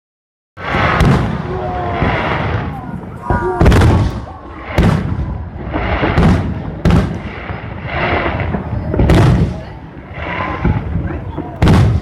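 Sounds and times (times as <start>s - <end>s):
fireworks bursting with crackle: 0.6s - 12.0s.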